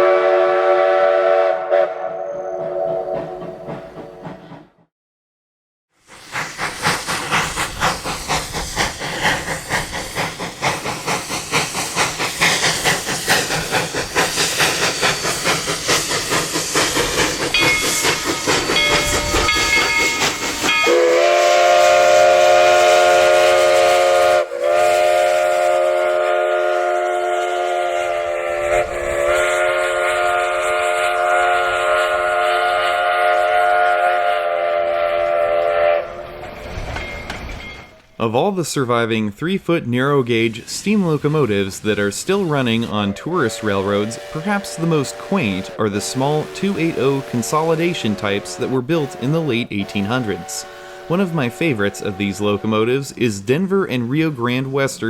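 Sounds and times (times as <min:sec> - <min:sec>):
steam whistle blasts: 0:00.0 - 0:03.3, 0:19.0 - 0:36.2, 0:43.0 - 0:53.1
steam locomotive exhaust chuffs: 0:00.0 - 0:04.9, 0:06.0 - 0:55.0.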